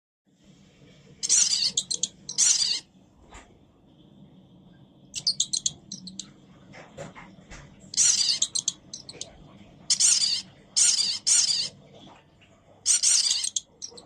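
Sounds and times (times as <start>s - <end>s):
cat chirping: 1.2s - 2.8s, 5.2s - 6.3s, 7.9s - 11.8s, 12.9s - 14.0s.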